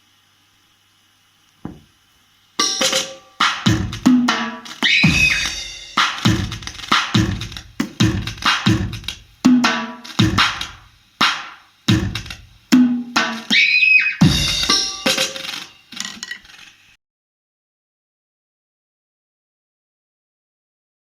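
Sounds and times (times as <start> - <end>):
electronic percussion pad hits: 2.6 - 12.3, 14.2 - 15.7.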